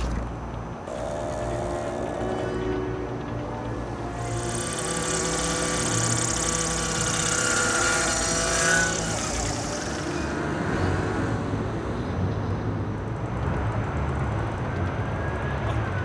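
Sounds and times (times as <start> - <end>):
small engine high-pitched whine: 0.8 - 12.3.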